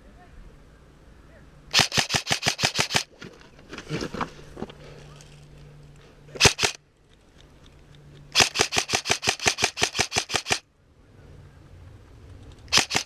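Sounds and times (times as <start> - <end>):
airsoft gun firing: 1.7 - 3.1, 6.4 - 6.8, 8.3 - 10.6, 12.7 - 13.0.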